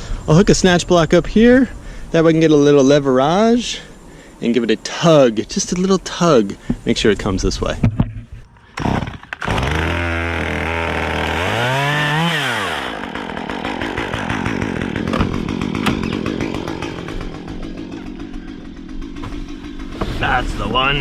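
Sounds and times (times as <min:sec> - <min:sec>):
chainsaw idling and revving: 0:08.8 - 0:21.0.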